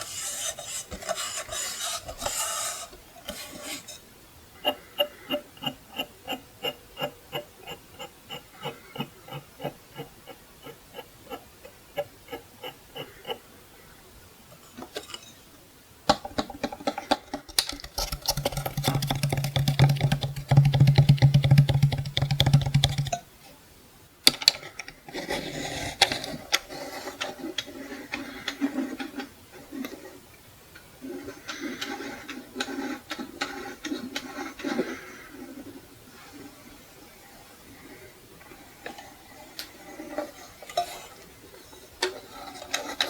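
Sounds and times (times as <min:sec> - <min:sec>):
fingers tapping on clock casing: 0:16.1 - 0:23.2.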